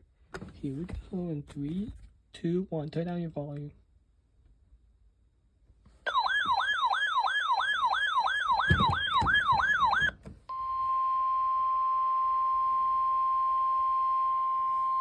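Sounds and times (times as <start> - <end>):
radio alarm warbling in pitch: 6.1 - 10.1.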